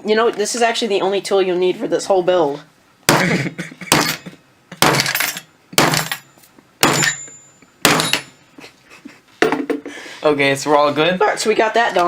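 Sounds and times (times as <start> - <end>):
hammer blows ringing: 3.1 - 8.4.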